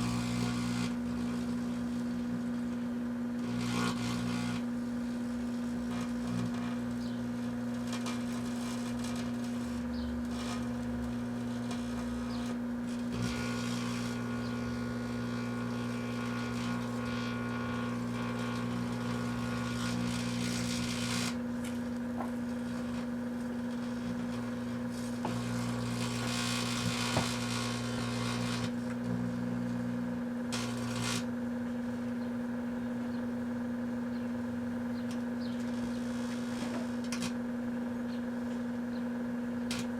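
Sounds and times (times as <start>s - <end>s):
microwave oven humming: 0.0s - 39.9s
sparklers hissing and crackling: 30.5s - 31.3s.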